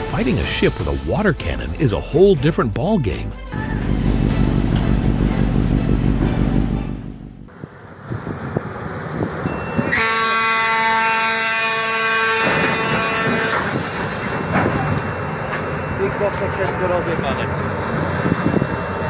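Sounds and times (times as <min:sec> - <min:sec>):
ship's horn blast: 0:09.8 - 0:14.1.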